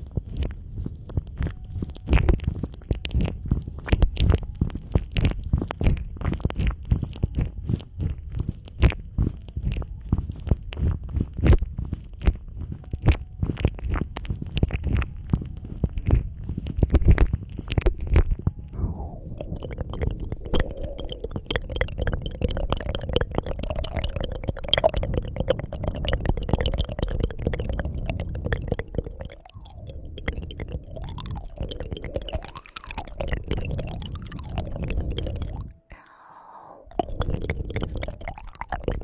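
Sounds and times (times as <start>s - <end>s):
wet tongue clicks and smacks: 16.1s - 39.0s.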